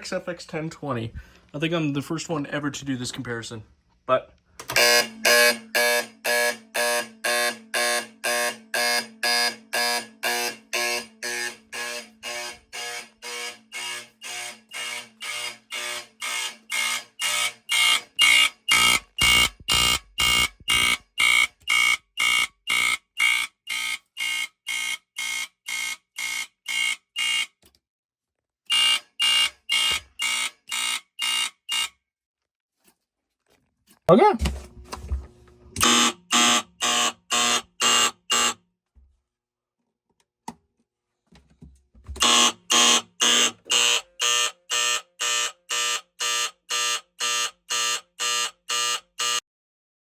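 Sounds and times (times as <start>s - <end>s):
fire alarm pulsing: 4.8s - 27.5s, 28.7s - 31.9s, 35.8s - 38.6s, 42.2s - 49.4s.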